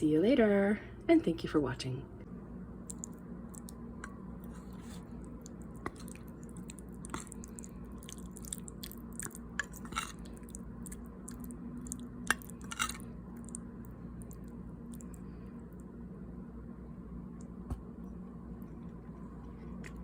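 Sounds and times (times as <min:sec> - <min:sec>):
low steady hum: 0:00.0 - 0:20.0
close-up wet chewing: 0:02.8 - 0:03.8, 0:04.4 - 0:15.2.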